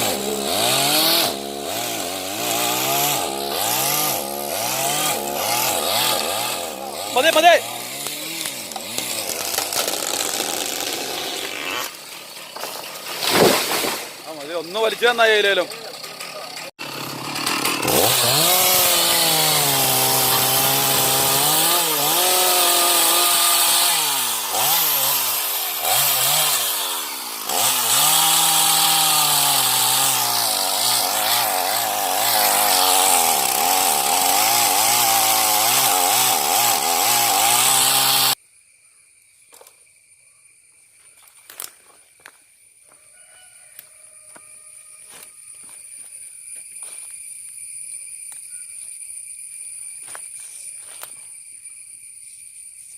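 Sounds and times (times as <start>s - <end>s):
chainsaw cutting wood: 0.0s - 38.4s.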